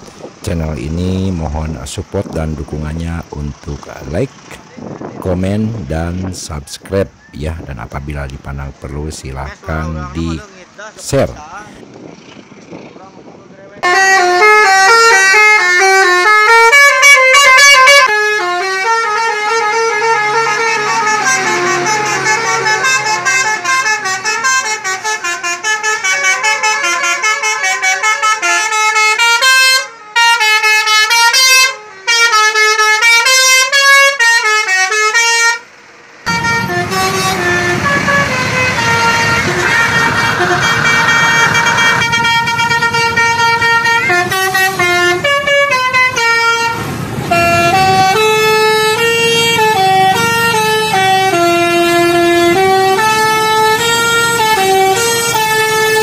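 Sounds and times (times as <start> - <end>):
broad rumbling noise: 0.0 - 14.3, 35.7 - 56.0
musical bus horn playing a tune: 13.8 - 56.0.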